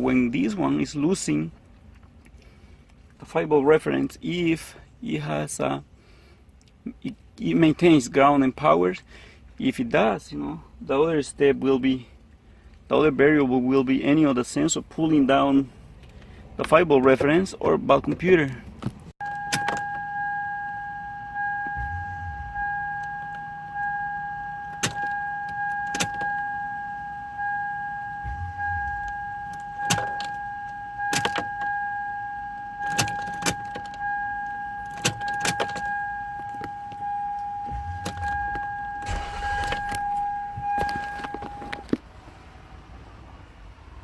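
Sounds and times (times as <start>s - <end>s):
car warning chime: 19.2s - 41.9s.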